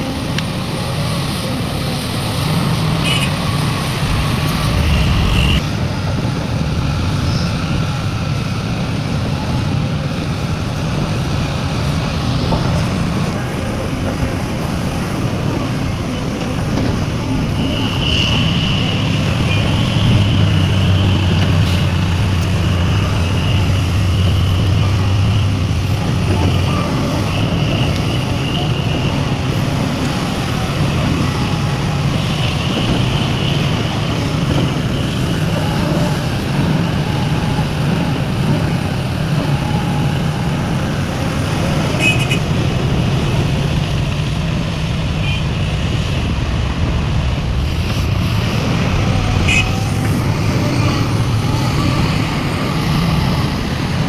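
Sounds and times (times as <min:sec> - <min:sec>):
heavy diesel engines running: 0:00.0 - 0:54.0
high whine: 0:02.9 - 0:08.8.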